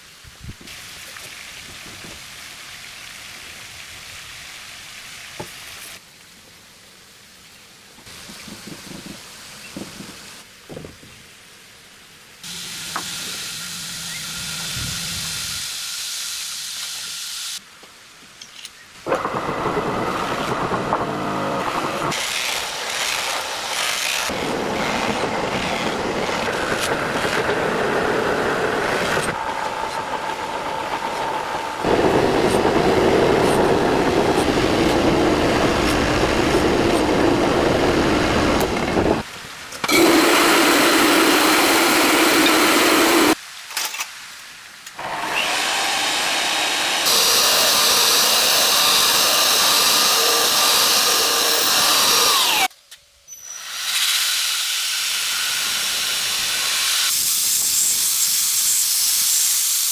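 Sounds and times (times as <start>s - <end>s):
electric grinder grinding steel: 19.2s - 29.4s, 31.8s - 39.2s, 39.9s - 43.4s, 45.0s - 52.7s, 53.6s - 58.9s.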